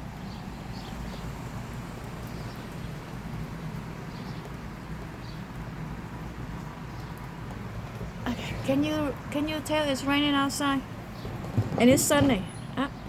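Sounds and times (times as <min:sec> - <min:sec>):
rain falling: 0:00.0 - 0:13.0.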